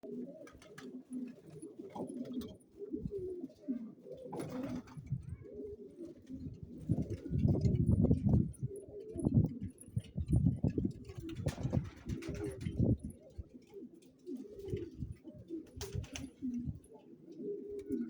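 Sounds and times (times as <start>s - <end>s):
pigeons cooing: 0.0s - 18.0s.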